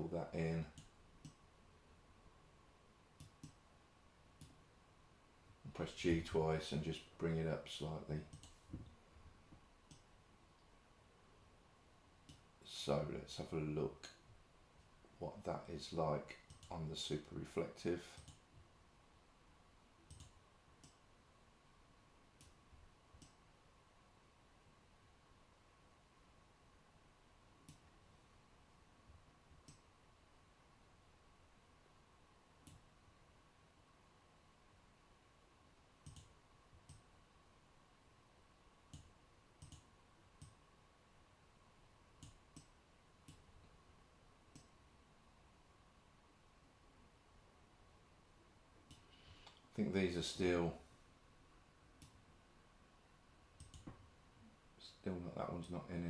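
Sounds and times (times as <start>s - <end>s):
faint steady hum: 0.0s - 56.0s
faint steady whine: 0.0s - 56.0s
computer mouse clicks: 3.2s - 3.6s, 8.3s - 8.6s, 16.5s - 16.7s, 20.1s - 21.0s, 29.5s - 29.8s, 32.6s - 32.8s, 36.0s - 37.1s, 38.9s - 40.6s, 42.2s - 43.4s, 44.5s - 44.7s, 48.9s - 49.6s, 53.6s - 54.0s.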